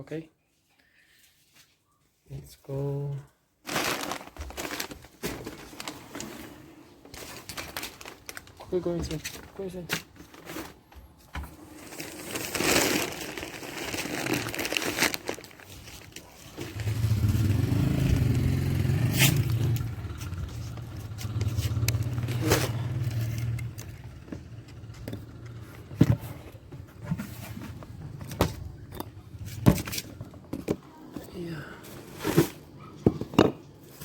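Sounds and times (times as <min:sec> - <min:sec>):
vehicle engine running: 0:16.8 - 0:29.5.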